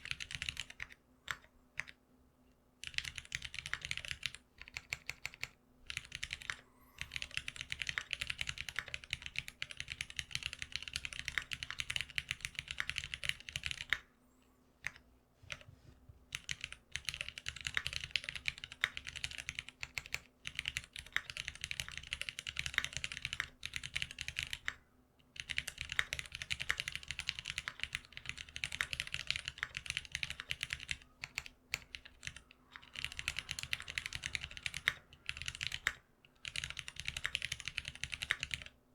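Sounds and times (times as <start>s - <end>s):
keyboard typing clatter: 0.0s - 1.9s, 2.8s - 14.0s, 16.3s - 24.8s, 25.4s - 38.7s.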